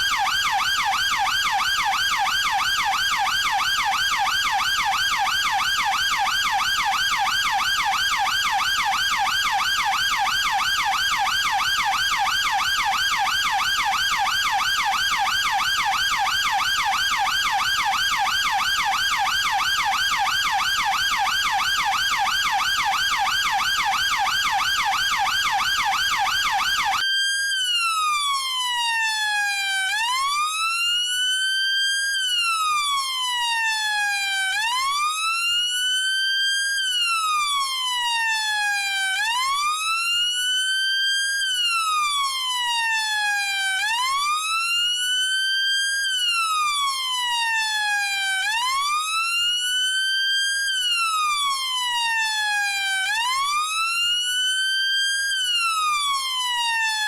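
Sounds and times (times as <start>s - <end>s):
police car siren: 0.0s - 57.0s.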